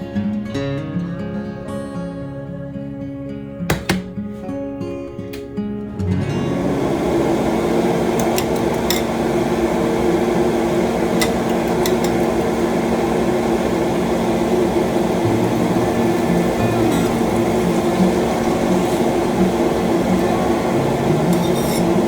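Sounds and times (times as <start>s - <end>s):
fan hum: 5.1s - 22.0s
cookware clinking: 8.1s - 9.3s, 11.0s - 12.8s, 16.4s - 22.0s.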